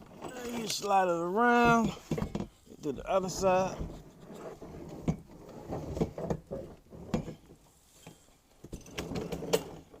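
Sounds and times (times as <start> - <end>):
knocks and clatter of parts: 0.0 - 2.6, 5.9 - 10.0.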